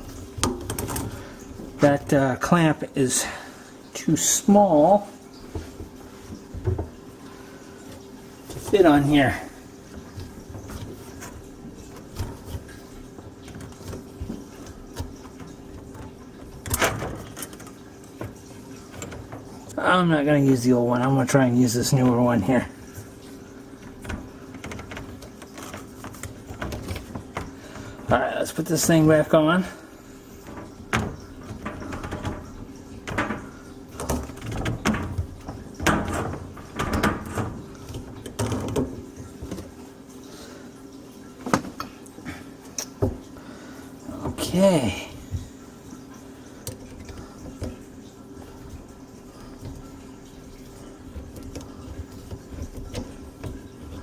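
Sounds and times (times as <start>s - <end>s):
plastic pipe clicks and knocks: 0.0s - 2.3s, 5.4s - 7.0s, 30.4s - 39.8s, 46.6s - 54.0s
faint steady hum: 0.0s - 54.0s.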